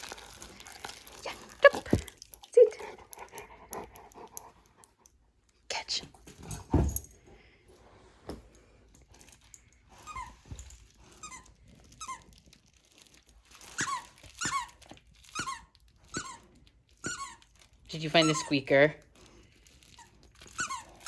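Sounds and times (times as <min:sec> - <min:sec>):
thump: 0:06.5 - 0:07.1
dog toy squeaking: 0:10.0 - 0:10.4, 0:11.1 - 0:12.3, 0:13.6 - 0:18.8, 0:20.0 - 0:21.0.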